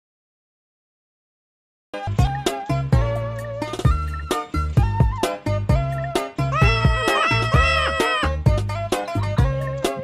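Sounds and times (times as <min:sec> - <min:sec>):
plucked guitar music with bass: 0:02.2 - 0:10.0.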